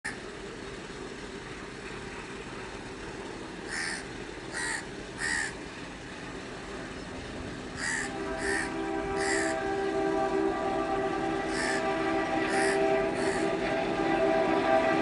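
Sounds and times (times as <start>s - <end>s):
low engine rumble: 0.0s - 15.0s
crow cawing: 3.7s - 5.6s, 7.8s - 9.6s, 11.5s - 11.9s, 12.5s - 13.5s.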